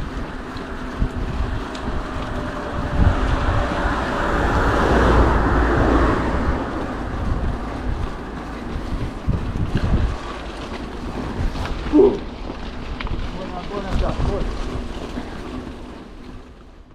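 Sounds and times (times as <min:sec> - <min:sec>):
bike rolling over rough ground: 0:00.0 - 0:16.9
wind buffeting microphone: 0:00.0 - 0:16.9.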